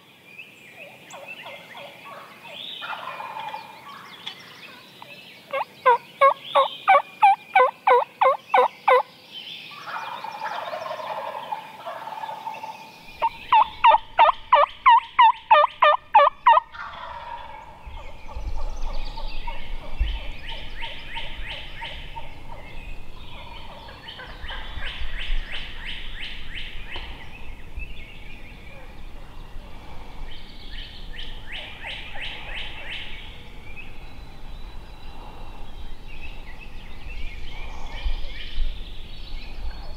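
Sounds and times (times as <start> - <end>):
distant turkey gobbles: 1.1 - 4.8, 5.5 - 9.1, 9.8 - 25.0
turkey yelping: 5.5 - 9.0, 13.2 - 17.6.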